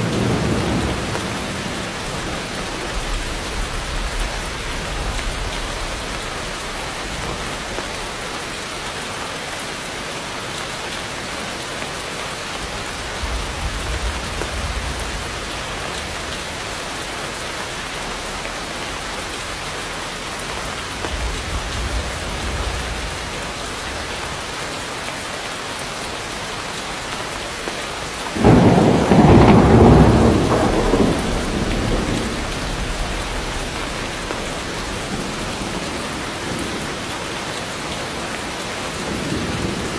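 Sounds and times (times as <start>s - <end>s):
loud thunder clap: 0.0s - 7.8s, 28.4s - 35.9s
thunder rumbling: 0.0s - 8.2s, 12.5s - 24.5s, 28.2s - 37.5s
heavy rain on foliage: 0.0s - 39.9s.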